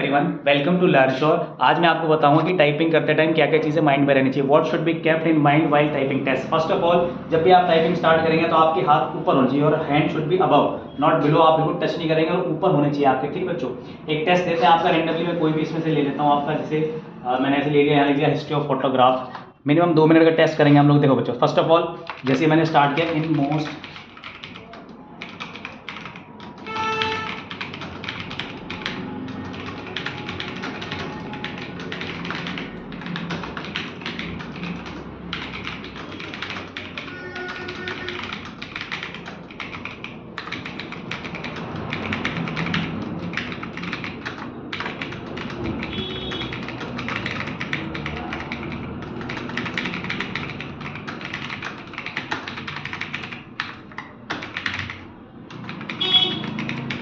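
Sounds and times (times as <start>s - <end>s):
fast keyboard typing: 22.0s - 57.0s.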